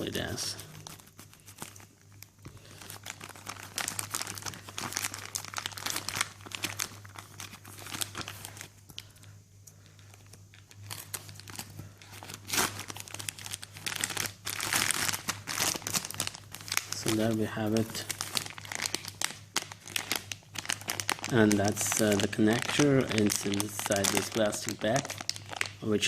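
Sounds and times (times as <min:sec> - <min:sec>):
packaging crinkling and rustling: 0:00.0 - 0:09.2, 0:09.8 - 0:26.0.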